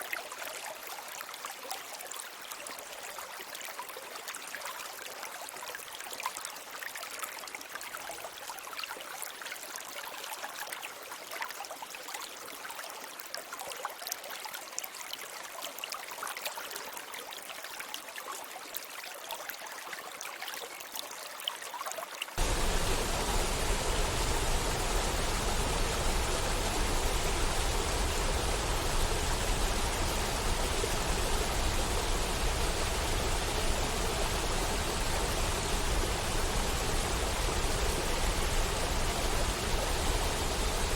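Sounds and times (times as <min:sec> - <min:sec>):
stream trickling and babbling: 0:00.0 - 0:40.9
rushing water: 0:22.4 - 0:40.9.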